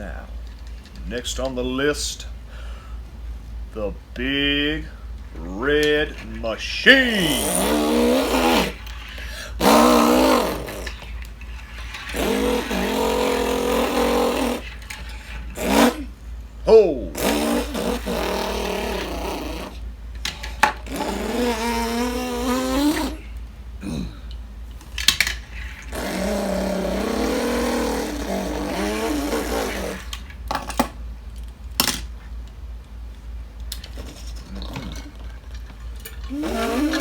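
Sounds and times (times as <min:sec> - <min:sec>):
person imitating car engine: 0:03.8 - 0:11.1, 0:12.0 - 0:14.8, 0:15.5 - 0:19.9, 0:20.8 - 0:24.3, 0:25.9 - 0:30.1, 0:36.2 - 0:37.0
toy cars clicking: 0:05.4 - 0:16.1, 0:24.3 - 0:32.1.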